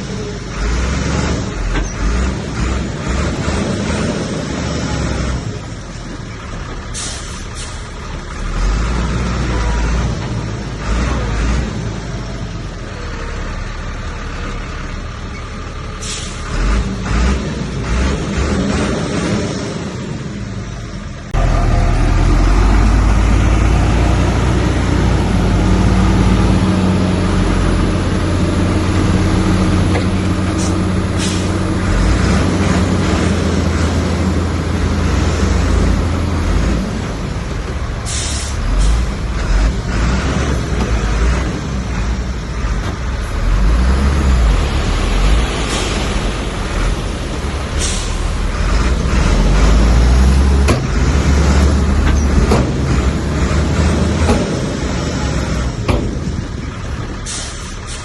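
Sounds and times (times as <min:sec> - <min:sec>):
heavy diesel engine drone: 0:00.0 - 0:58.0.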